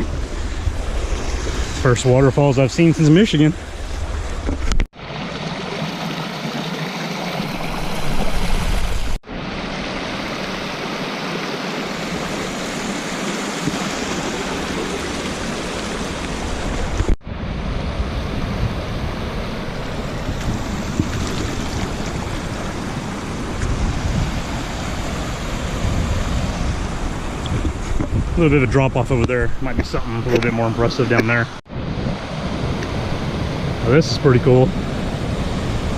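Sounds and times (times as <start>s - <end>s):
stream pouring over waterfalls: 5.0s - 17.1s.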